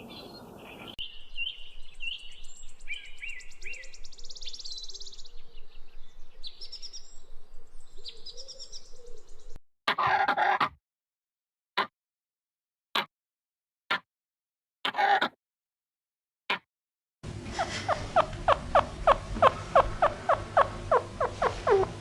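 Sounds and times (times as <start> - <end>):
birds chirping and trilling: 0.0 - 9.6, 17.4 - 22.0.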